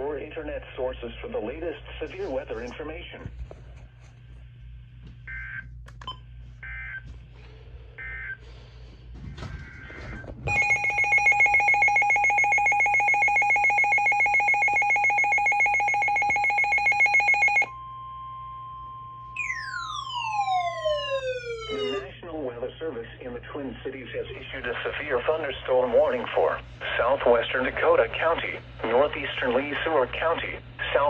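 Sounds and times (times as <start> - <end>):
two-tone alarm with flutter: 9.4 - 18.3, 19.4 - 22.0
falling siren sweep: 19.4 - 22.1.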